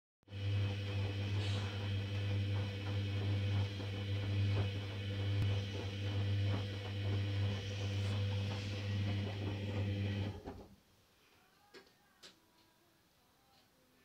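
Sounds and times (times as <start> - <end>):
washing machine humming: 0.2 - 10.7.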